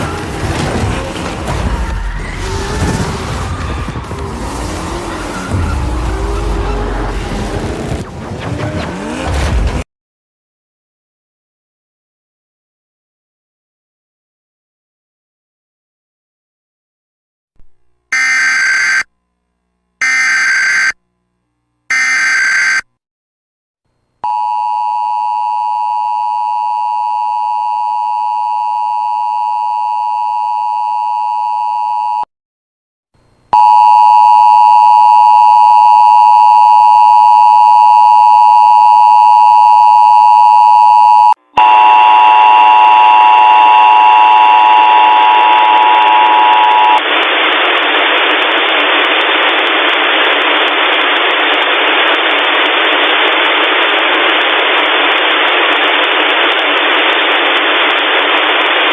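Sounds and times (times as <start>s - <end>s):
harsh static: 0.0s - 9.8s, 41.6s - 58.9s
two-tone alert signal: 18.1s - 19.1s, 20.0s - 21.0s, 21.9s - 22.9s.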